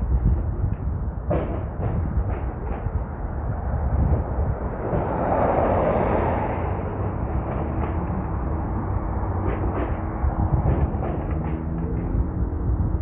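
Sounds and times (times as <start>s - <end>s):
street traffic rumbling: 0.0s - 13.0s
vehicle passing by: 3.9s - 13.0s.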